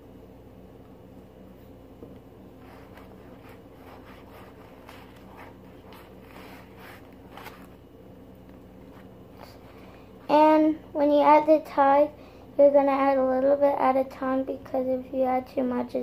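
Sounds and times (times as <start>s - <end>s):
faint steady hum: 0.0s - 16.0s
slime squishing and scraping: 2.6s - 7.7s.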